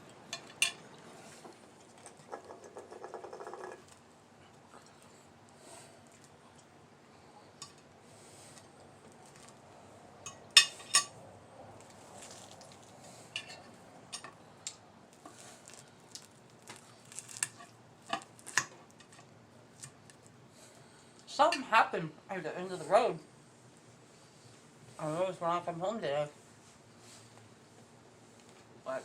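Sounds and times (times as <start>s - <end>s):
cutlery clinking on plates: 0.4s - 0.8s, 10.3s - 11.1s.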